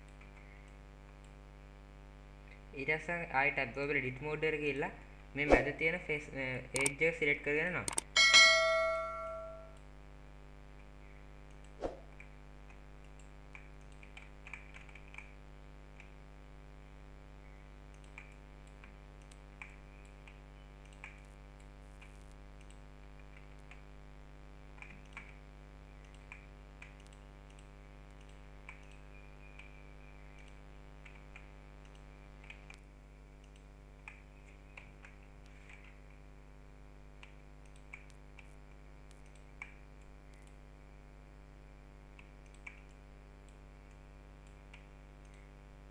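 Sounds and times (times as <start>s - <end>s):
steady low hum: 0.0s - 13.9s
mouse and keyboard clicks: 6.8s - 7.0s, 7.9s - 8.1s, 13.1s - 15.4s, 17.9s - 23.8s, 24.8s - 25.4s, 26.0s - 36.2s, 37.2s - 40.6s, 42.2s - 45.5s.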